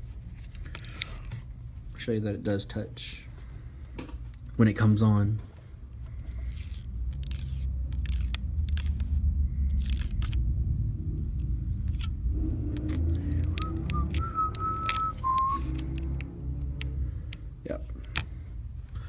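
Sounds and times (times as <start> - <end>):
steady low rumble: 3.2 - 19.0
person whistling: 13.5 - 15.8.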